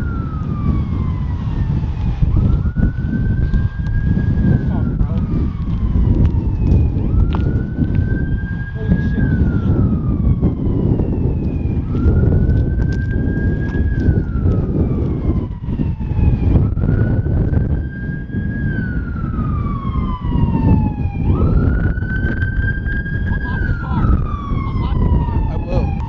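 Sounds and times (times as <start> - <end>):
loud low rumble: 0.0 - 17.9
police siren wailing: 0.0 - 26.0.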